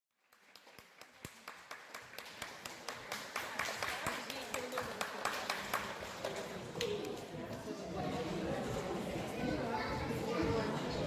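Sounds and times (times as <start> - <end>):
chatter of many voices: 2.7 - 11.0.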